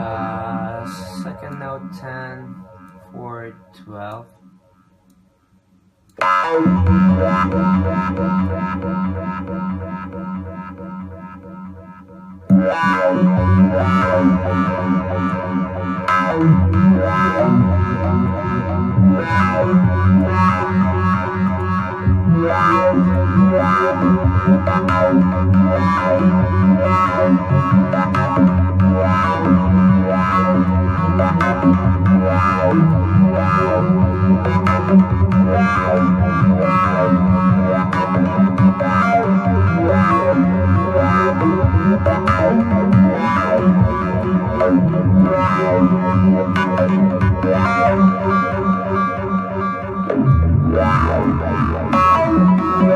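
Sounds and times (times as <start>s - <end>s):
distorted arpeggiated synthesizer line: 0.0s - 5.0s, 6.2s - 52.9s.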